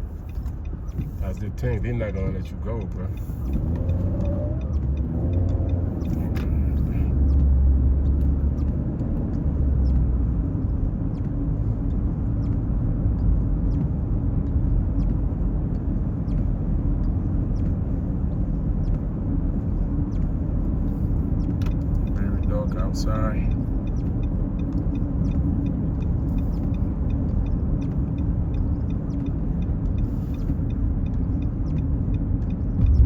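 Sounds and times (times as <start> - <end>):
car road rumble: 0.0 - 33.0
faint light ticks: 0.0 - 33.0.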